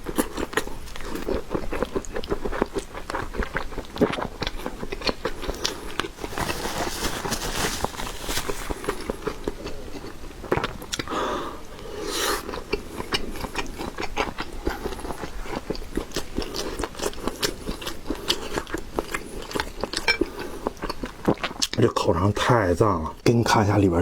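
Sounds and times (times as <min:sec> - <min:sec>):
biting and chewing sausage: 0:00.0 - 0:21.8.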